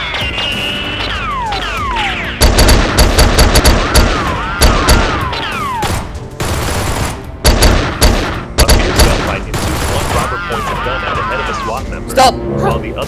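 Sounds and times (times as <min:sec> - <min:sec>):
whistling bullet whines: 0:00.0 - 0:02.4
gunshot volleys: 0:01.9 - 0:10.4.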